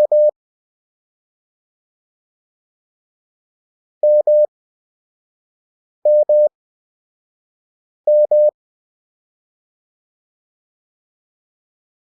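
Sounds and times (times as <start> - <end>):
morse code beeps: 0.0 - 0.3, 4.0 - 4.5, 6.1 - 6.5, 8.1 - 8.5.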